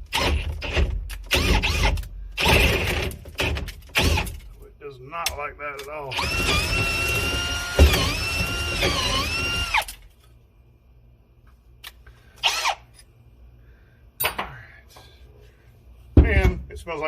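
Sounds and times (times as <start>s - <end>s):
power drill whining: 6.1s - 10.0s, 12.4s - 12.9s.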